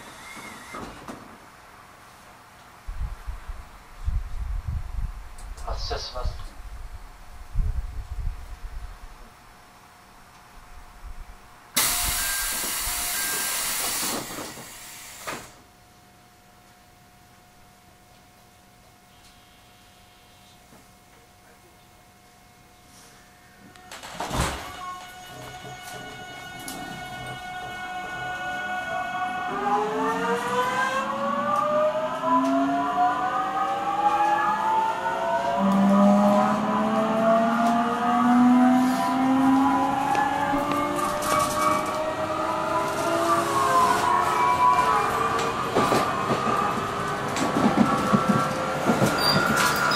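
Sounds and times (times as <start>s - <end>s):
compressed air hiss: 11.8s - 15.6s
train car running noise: 11.8s - 16.8s, 23.6s - 38.0s, 38.6s - 49.9s
traction motor whine rising: 26.6s - 49.9s.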